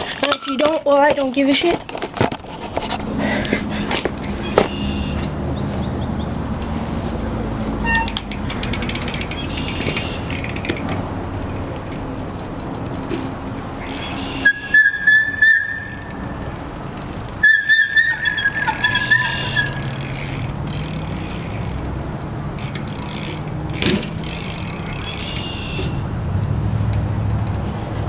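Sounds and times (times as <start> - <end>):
bicycle brake squealing: 4.4 - 5.3, 7.8 - 10.7, 13.8 - 16.4, 17.4 - 21.7, 24.2 - 26.0.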